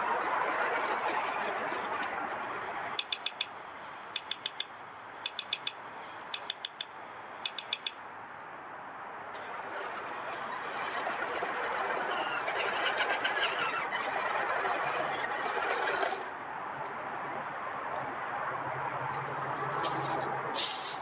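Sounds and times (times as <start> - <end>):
toy tank motor whirring: 0.0 - 8.0, 9.4 - 16.3
sharp clicks: 3.0 - 8.0.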